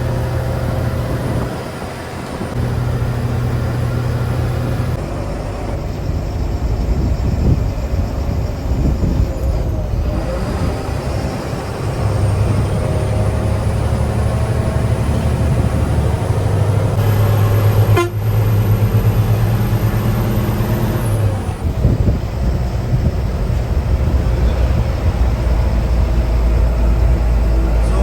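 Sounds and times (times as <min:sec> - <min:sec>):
train cab running noise: 0:00.0 - 0:28.0
steady low tone: 0:21.1 - 0:28.0.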